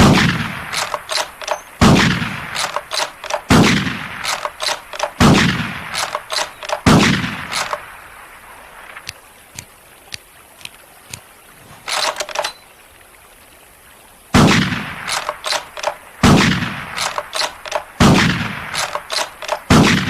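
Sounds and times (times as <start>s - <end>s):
rifle shots echoing: 0.0s - 8.0s, 14.4s - 20.0s
rifle bolt clicks: 0.7s - 2.0s, 2.6s - 3.6s, 4.2s - 5.4s, 6.0s - 7.8s, 11.9s - 12.6s, 15.1s - 16.0s, 17.0s - 17.9s, 18.8s - 19.8s.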